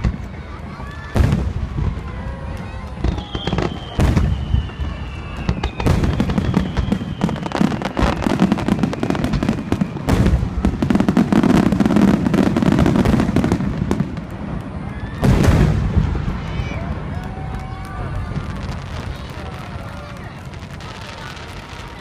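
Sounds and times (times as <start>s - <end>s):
fireworks booming: 0.0s - 22.0s
fireworks rapid crackling: 0.0s - 22.0s
faint falling whistle: 3.0s - 10.1s.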